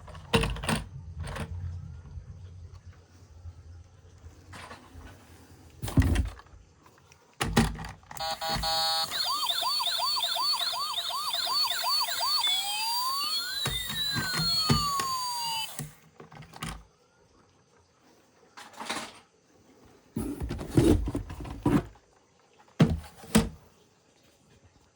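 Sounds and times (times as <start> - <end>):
toy electronic siren: 8.2 - 16.0.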